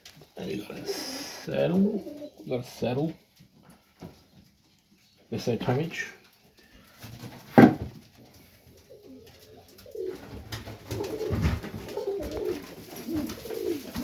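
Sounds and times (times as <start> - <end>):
pigeons cooing: 0.4 - 2.6, 8.4 - 14.0.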